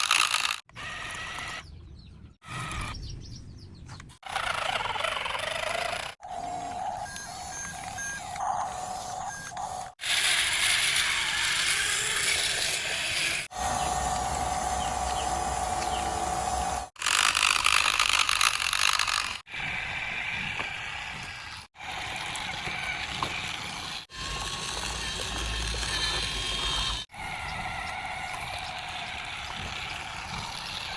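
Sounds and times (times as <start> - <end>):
steady mechanical whine: 6.2 - 18.4, 19.0 - 30.9.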